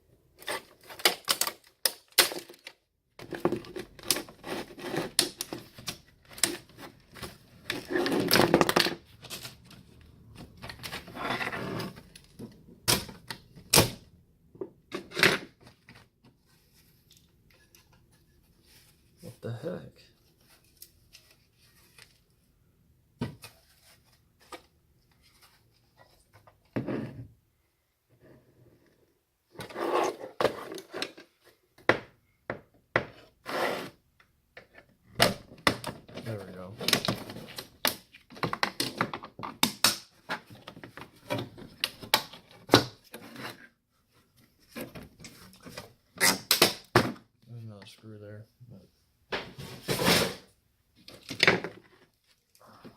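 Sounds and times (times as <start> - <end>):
plastic and metal parts clattering: 0.4 - 19.0, 34.6 - 43.7.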